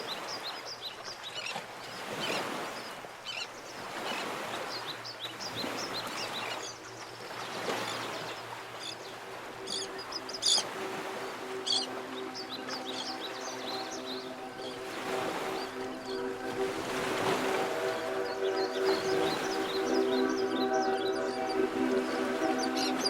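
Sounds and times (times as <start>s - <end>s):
soft music tones: 5.6s - 23.0s.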